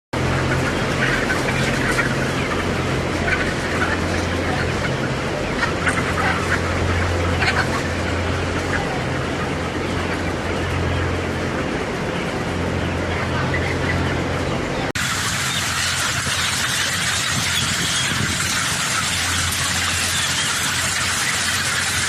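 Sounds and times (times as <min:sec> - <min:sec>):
hens clucking: 0:00.2 - 0:22.0
low machine hum: 0:00.2 - 0:22.0.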